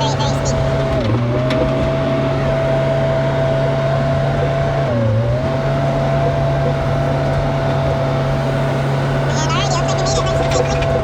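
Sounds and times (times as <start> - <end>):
diesel engine under load: 0.0 - 11.0.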